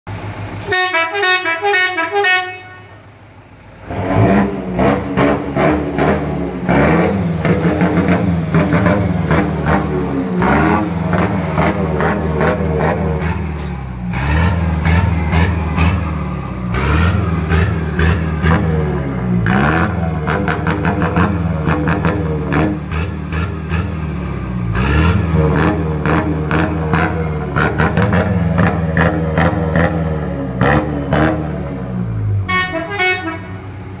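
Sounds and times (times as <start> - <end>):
diesel truck engine revving: 0.1 - 34.0
truck horn toots: 0.6 - 3.1, 32.4 - 33.8.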